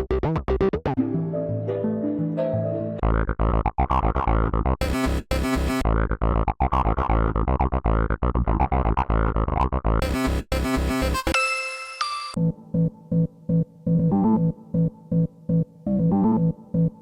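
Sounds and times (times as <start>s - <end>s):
stuttering synthesizer music: 4.8s - 5.9s, 10.0s - 11.4s.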